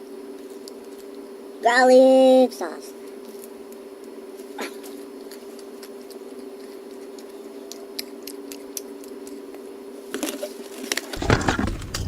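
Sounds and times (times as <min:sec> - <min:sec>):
steady hum: 0:00.0 - 0:12.0
person chewing with mouth clicks: 0:04.6 - 0:09.6.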